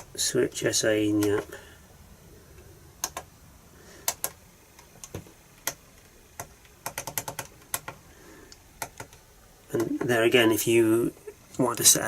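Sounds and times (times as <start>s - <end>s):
computer mouse and keyboard clicks: 1.2s - 1.6s, 3.0s - 3.3s, 4.0s - 10.2s.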